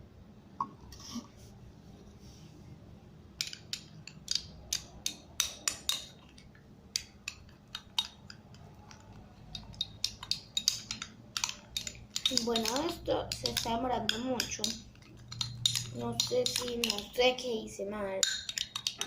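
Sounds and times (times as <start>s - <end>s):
spoon clinking against bowl: 9.6s - 17.2s.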